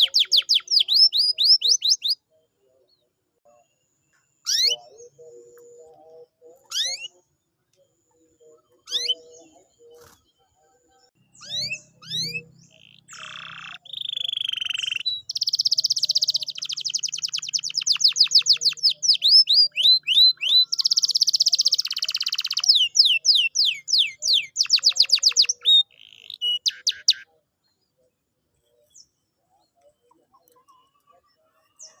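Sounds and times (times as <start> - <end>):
canary singing: 0.0 - 3.7, 4.3 - 28.0.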